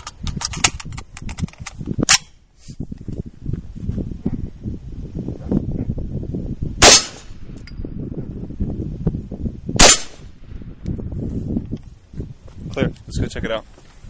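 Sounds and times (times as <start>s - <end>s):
wind buffeting microphone: 0.0s - 14.0s
rifle shots: 6.8s - 7.5s, 9.8s - 10.4s.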